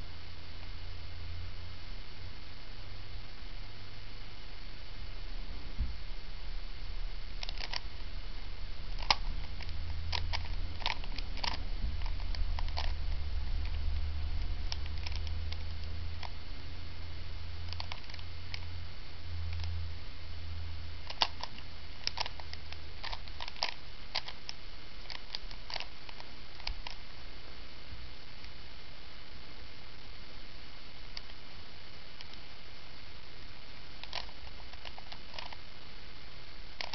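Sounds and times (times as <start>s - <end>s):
low steady hum: 0.0s - 36.9s
puzzle cube turning clicks: 7.4s - 7.9s, 8.9s - 13.0s, 13.6s - 16.4s, 17.7s - 18.7s, 21.0s - 27.0s, 31.1s - 31.4s, 34.0s - 35.6s.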